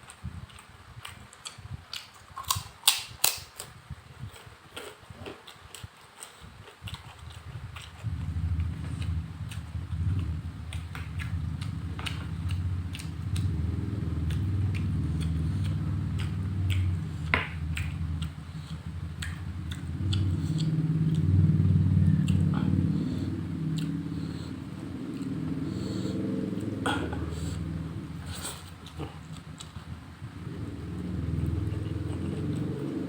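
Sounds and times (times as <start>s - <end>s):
chewing and mouth noises: 0.0s - 33.0s
steady low rumble: 6.9s - 33.0s.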